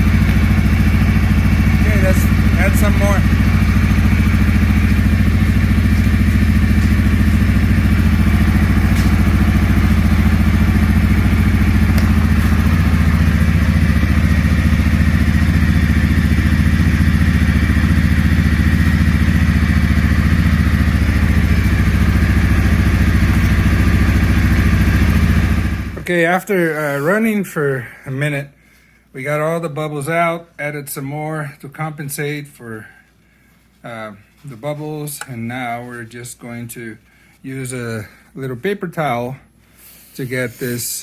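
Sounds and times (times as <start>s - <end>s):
atv engine idling: 0.0s - 26.1s.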